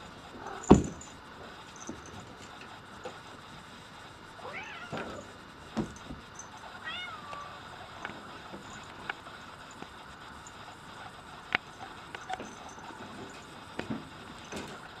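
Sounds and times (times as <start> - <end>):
cat meowing: 4.4 - 5.0, 6.8 - 7.6.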